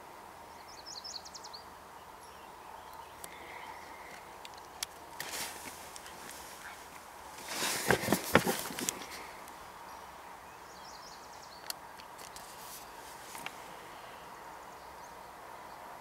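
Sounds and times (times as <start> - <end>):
rustling: 3.9 - 9.6, 12.2 - 13.8.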